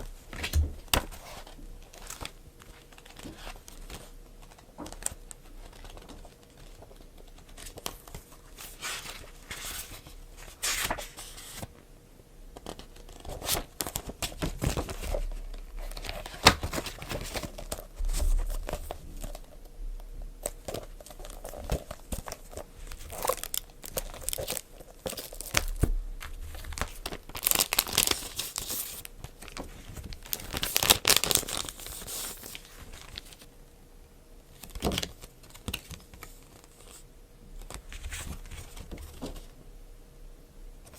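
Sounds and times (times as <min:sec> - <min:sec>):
packaging crinkling: 0:20.4 - 0:33.4
packaging tearing: 0:21.2 - 0:25.8, 0:26.7 - 0:29.1, 0:30.2 - 0:33.2.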